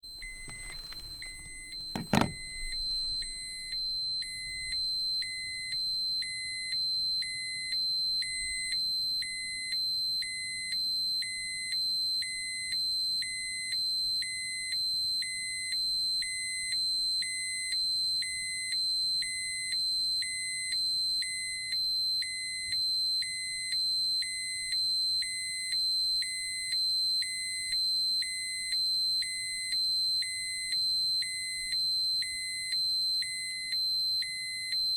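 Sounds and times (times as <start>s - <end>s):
steady high-pitched alarm tone: 0.1s - 9.8s.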